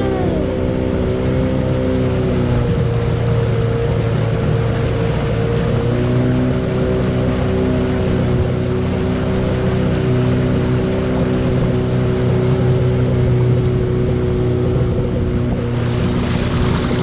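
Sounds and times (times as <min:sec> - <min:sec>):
motorboat engine running: 0:00.0 - 0:17.0
water and wind rushing: 0:00.0 - 0:17.0.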